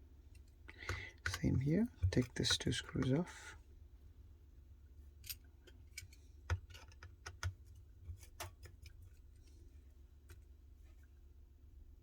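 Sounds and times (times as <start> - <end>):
screwdriver metal clicks and taps: 0.7 - 3.2, 6.0 - 7.6.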